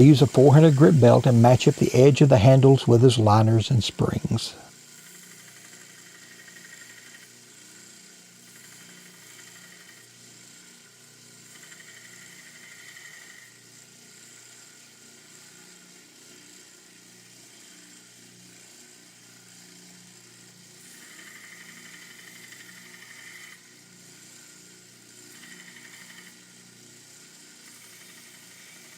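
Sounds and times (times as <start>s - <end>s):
belt grinder running: 0.0s - 3.6s, 4.7s - 28.9s
high grinding hiss: 0.0s - 10.1s, 20.8s - 24.5s, 25.3s - 26.5s, 27.6s - 28.9s.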